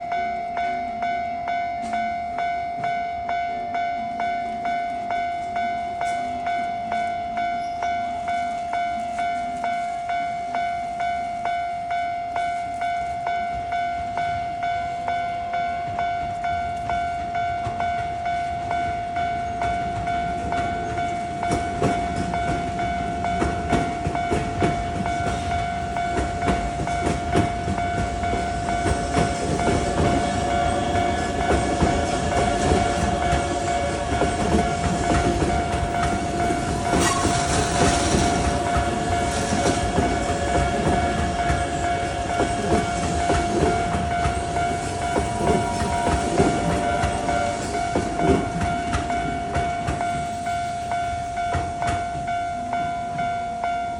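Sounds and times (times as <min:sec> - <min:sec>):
level crossing warning bell: 0:00.0 - 0:53.9
train wheels clattering: 0:15.8 - 0:53.8.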